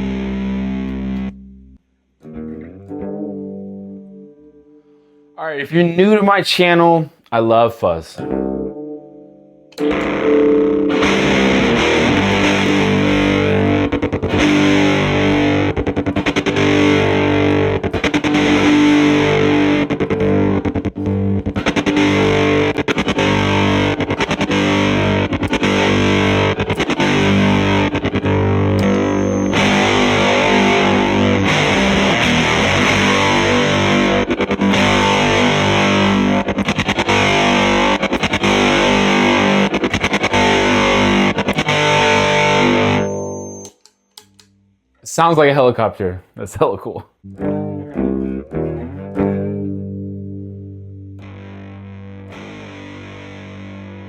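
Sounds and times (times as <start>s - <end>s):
fuzzed electric guitar riffing: 0.0s - 1.6s, 9.7s - 43.7s, 47.2s - 54.0s.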